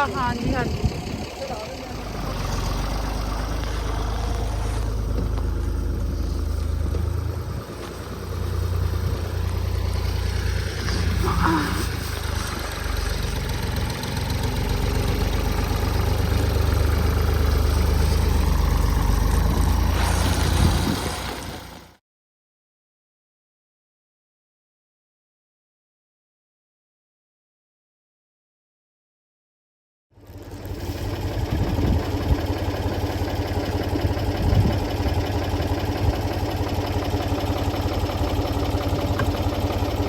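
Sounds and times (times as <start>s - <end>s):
tractor engine idling: 0.0s - 22.0s, 30.2s - 40.0s.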